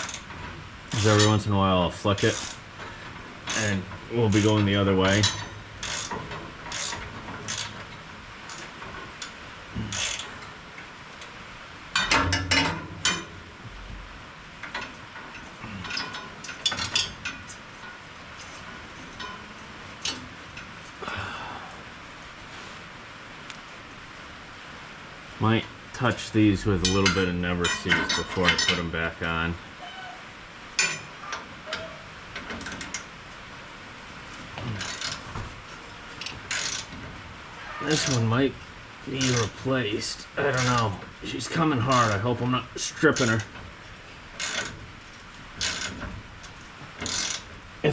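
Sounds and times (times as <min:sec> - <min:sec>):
ratchet wrench clicking: 0:05.2 - 0:06.1, 0:06.7 - 0:07.8, 0:09.9 - 0:10.2, 0:36.5 - 0:36.9, 0:44.4 - 0:44.7, 0:45.6 - 0:46.0, 0:47.0 - 0:47.4
loud rasping: 0:37.6 - 0:38.4.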